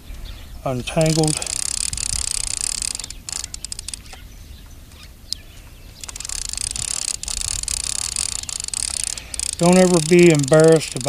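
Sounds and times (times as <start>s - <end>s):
fishing reel whirring and ticking: 0.9s - 4.1s, 6.0s - 11.0s.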